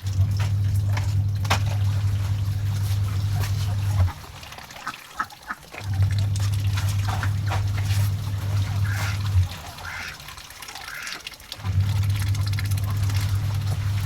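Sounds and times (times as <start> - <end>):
loud low hum: 0.0 - 4.2, 5.9 - 10.0, 11.6 - 14.0
ducks quacking: 3.3 - 6.0, 8.4 - 11.4.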